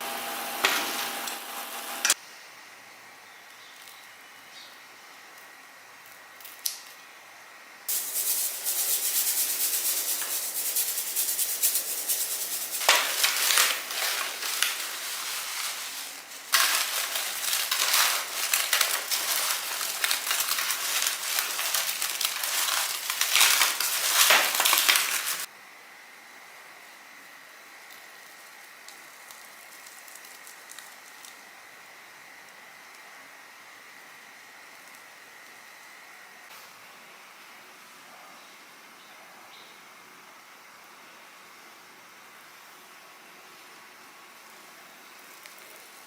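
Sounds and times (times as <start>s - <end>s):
gritty crunching and rubbing: 7.9s - 25.5s.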